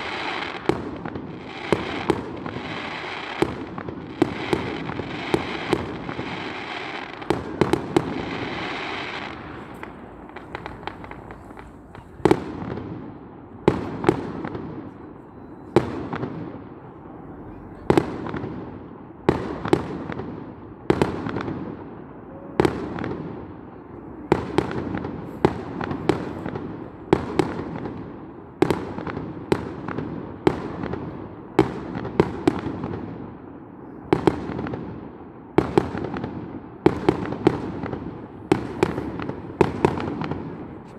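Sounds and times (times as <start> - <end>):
firework crackling hiss: 0.0 - 12.8
firework bangs echoing: 0.0 - 40.9.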